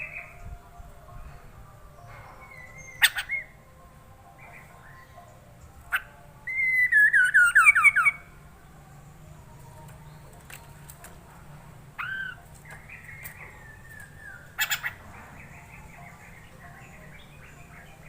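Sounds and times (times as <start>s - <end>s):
bird whistling song: 2.0s - 3.6s, 4.4s - 8.3s, 12.0s - 18.0s.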